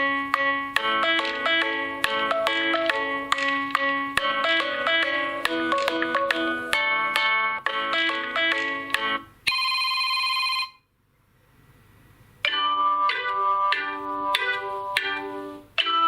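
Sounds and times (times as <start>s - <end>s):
melodic ringtone: 0.0s - 10.8s, 12.4s - 16.0s.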